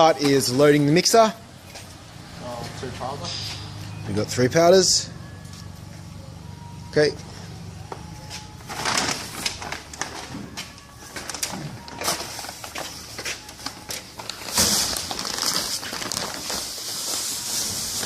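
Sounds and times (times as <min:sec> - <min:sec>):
clicks and plastic rustles: 0:08.0 - 0:18.0.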